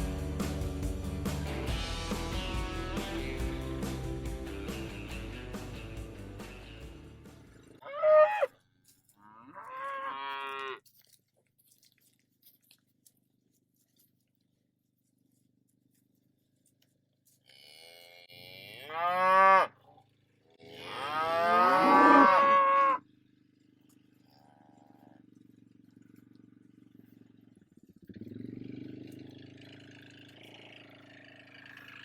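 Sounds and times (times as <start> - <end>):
cattle mooing: 7.8 - 8.5, 9.2 - 10.8, 17.5 - 19.8, 20.6 - 23.0.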